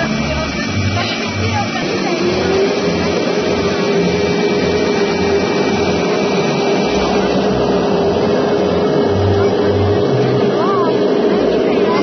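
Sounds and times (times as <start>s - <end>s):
machine humming: 0.0s - 12.0s
noisy wash of sound: 0.0s - 12.0s.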